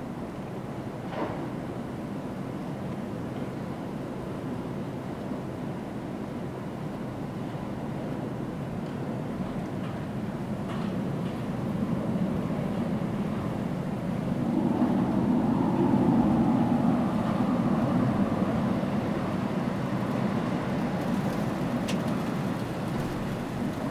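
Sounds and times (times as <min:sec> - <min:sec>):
vehicle rumble: 0:10.8 - 0:23.9.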